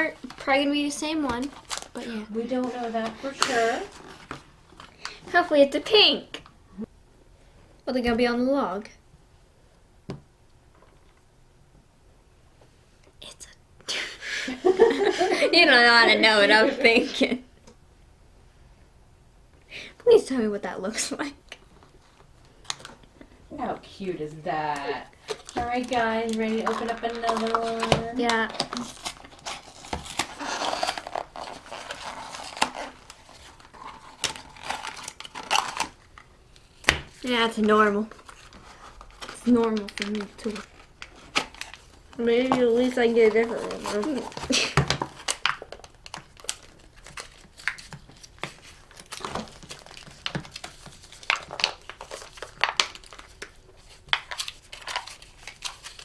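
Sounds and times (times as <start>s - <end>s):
packaging rustling and crinkling: 0.0s - 5.4s, 21.6s - 23.4s, 24.0s - 56.0s.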